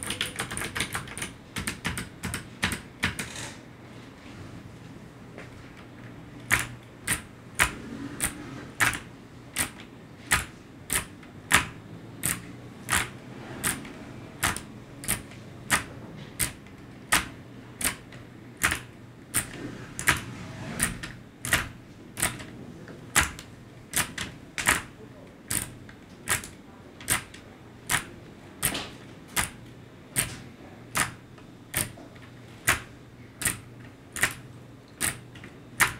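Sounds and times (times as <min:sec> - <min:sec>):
keyboard key clicks: 0:09.6 - 0:18.0.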